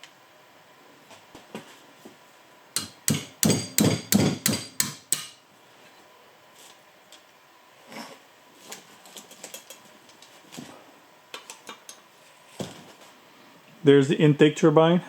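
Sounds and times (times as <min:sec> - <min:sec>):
hammer striking metal: 0:02.8 - 0:05.4.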